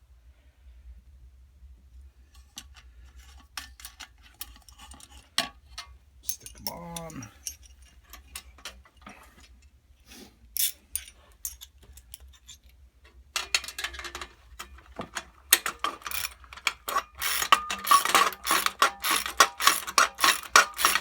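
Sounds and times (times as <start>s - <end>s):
steel hardware clicking: 13.4s - 21.0s.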